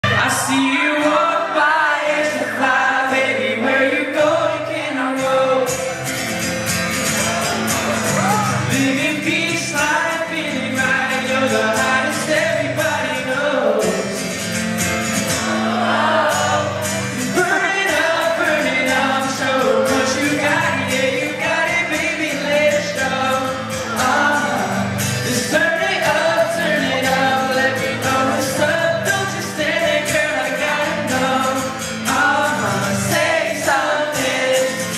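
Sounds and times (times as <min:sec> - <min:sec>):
live pop music: 0:00.0 - 0:34.9
person singing: 0:15.4 - 0:34.9.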